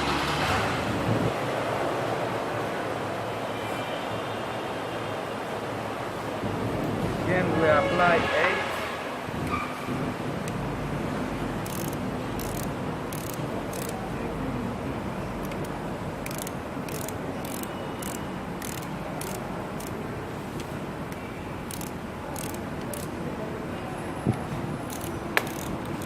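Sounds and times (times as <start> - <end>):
steady background noise: 0.0 - 26.0
ratchet wrench clicking: 11.6 - 14.0, 15.4 - 20.0, 21.6 - 23.2, 24.9 - 26.0.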